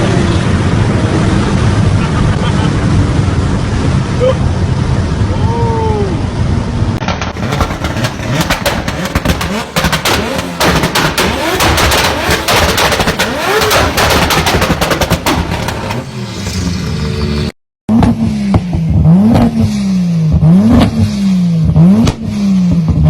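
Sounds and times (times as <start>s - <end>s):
car engine running: 6.5s - 23.0s
car exhaust popping and crackling: 7.0s - 16.6s.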